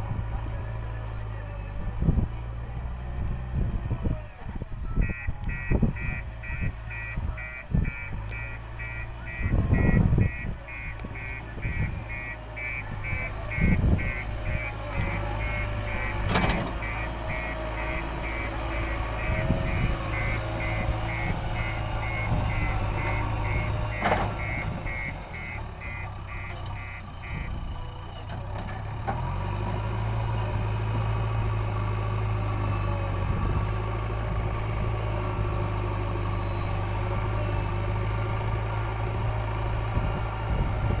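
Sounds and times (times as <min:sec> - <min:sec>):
diesel engine running: 0:00.0 - 0:41.0
reversing alarm beeping: 0:04.7 - 0:28.2.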